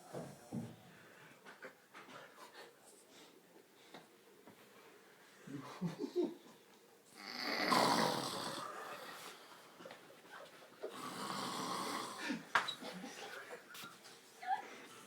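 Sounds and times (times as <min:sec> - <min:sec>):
heavy snoring: 0:07.2 - 0:09.2, 0:10.9 - 0:12.4.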